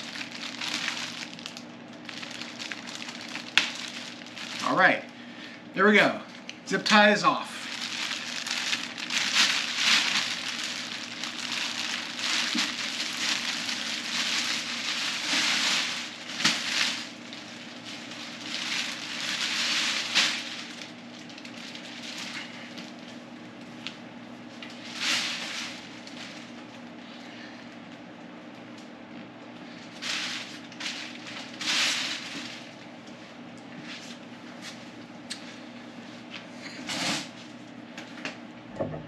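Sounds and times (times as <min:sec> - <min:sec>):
plastic bag crinkling: 0:00.0 - 0:05.2, 0:07.6 - 0:26.9, 0:29.7 - 0:33.2
steady low hum: 0:00.0 - 0:39.0.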